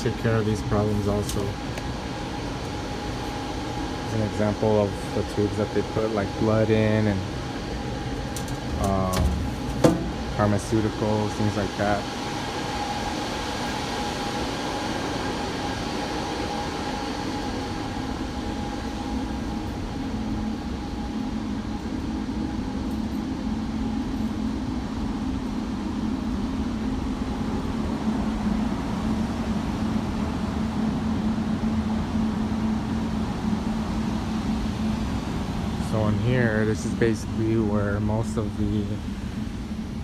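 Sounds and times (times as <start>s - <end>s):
low hum: 0.0s - 12.9s
air handler fans droning: 0.0s - 40.0s.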